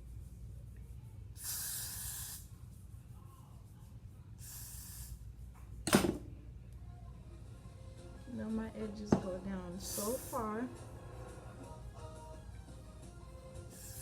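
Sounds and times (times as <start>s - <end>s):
aerosol spray hissing: 1.4s - 2.5s, 4.4s - 5.3s, 9.8s - 10.6s, 13.7s - 14.0s.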